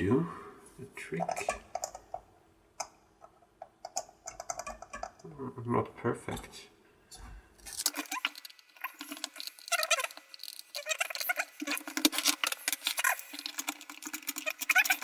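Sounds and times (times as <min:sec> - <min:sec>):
screwdriver scraping and squeaking: 0:03.9 - 0:05.2, 0:07.6 - 0:15.0.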